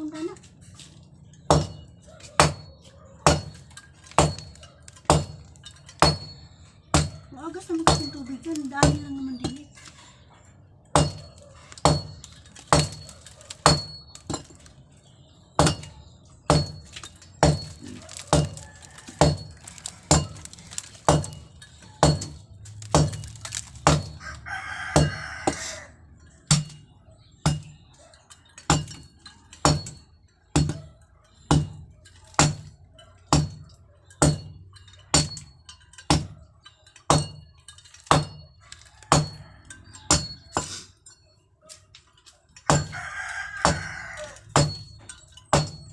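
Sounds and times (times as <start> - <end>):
hammer blows with metallic ring: 1.4 - 9.9, 10.9 - 14.7, 15.5 - 24.3, 25.0 - 28.0, 28.6 - 41.2, 42.6 - 45.9
rooster crowing: 18.0 - 20.1, 24.1 - 26.0, 38.9 - 40.5, 42.7 - 44.5.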